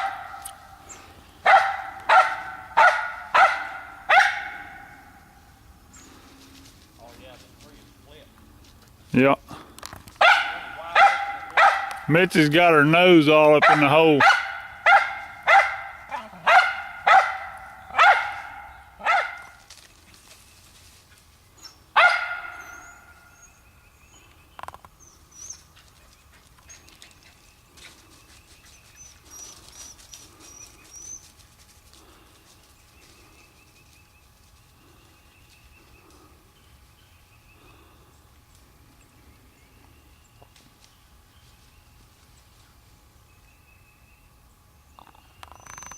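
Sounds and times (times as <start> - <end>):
dog barking: 0.0 - 0.6, 1.4 - 5.0, 10.2 - 12.1, 13.6 - 19.6, 22.0 - 23.0.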